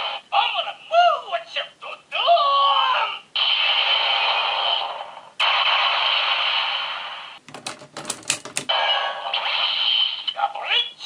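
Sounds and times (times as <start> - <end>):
toy hissing sound effect: 8.8 - 10.4.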